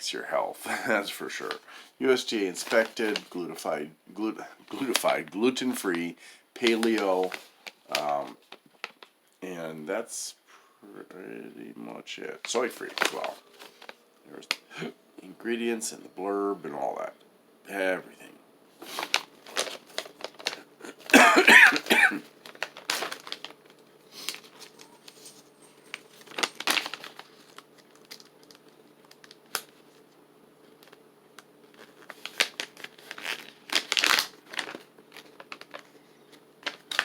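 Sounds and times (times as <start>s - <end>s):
plastic package crinkling: 2.5s - 3.5s, 4.7s - 6.0s, 6.6s - 9.1s, 12.4s - 14.7s, 18.8s - 37.0s.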